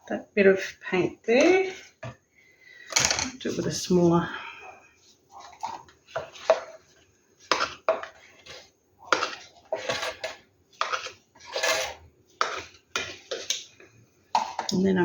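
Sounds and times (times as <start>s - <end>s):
utensil scraping a hard surface: 7.5s - 13.6s.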